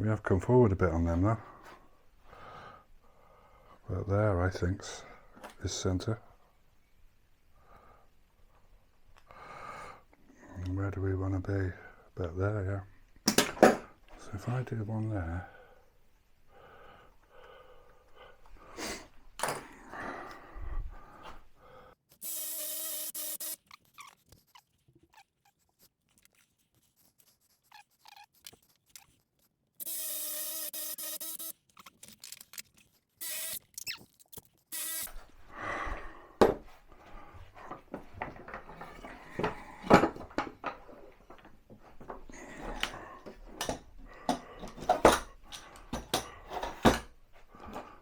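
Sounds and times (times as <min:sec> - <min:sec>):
power drill whining: 0:22.2 - 0:23.6, 0:29.8 - 0:31.5, 0:33.2 - 0:33.6, 0:34.7 - 0:35.2
wood and tools clattering: 0:37.5 - 0:48.0.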